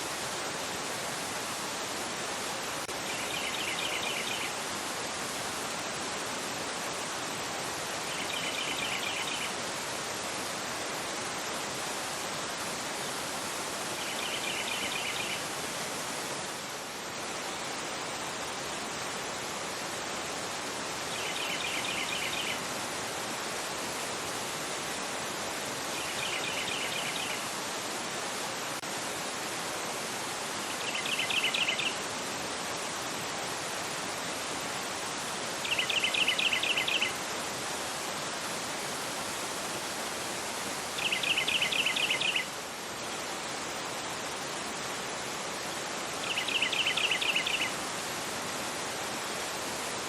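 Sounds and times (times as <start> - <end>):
river rushing over rocks: 0.0 - 50.0.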